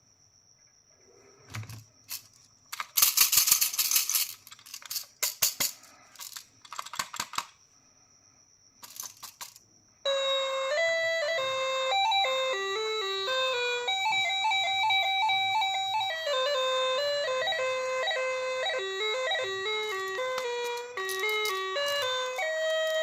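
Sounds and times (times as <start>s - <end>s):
simple electronic melody: 10.1s - 23.0s
candies rattling in plastic packaging: 19.8s - 23.0s.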